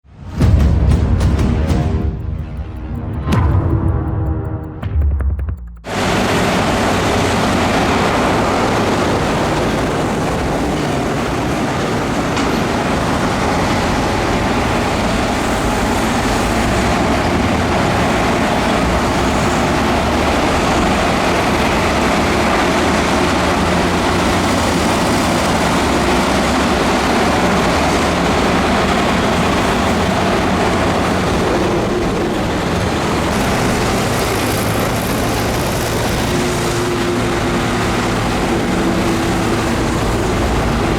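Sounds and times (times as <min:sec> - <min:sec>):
heavy diesel machinery running: 0:00.0 - 0:40.9.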